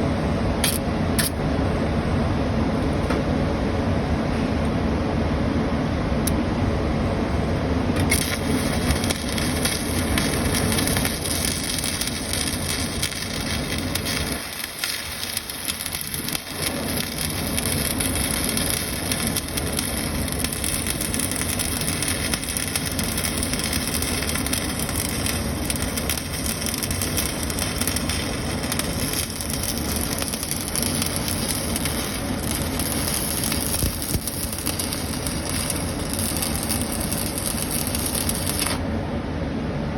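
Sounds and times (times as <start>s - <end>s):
electric welding arc crackling: 8.0s - 38.9s.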